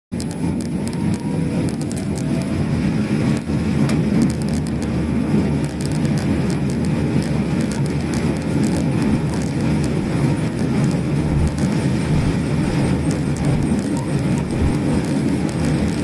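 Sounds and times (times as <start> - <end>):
small car road rumble: 0.1 - 16.0
rapid high-pitched squeak: 11.5 - 16.0.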